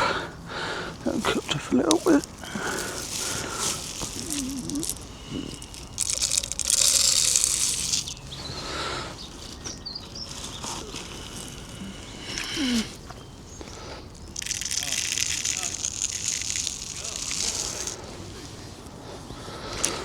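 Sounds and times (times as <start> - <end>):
bird seed pouring into feeder: 1.0 - 8.6, 14.2 - 18.3.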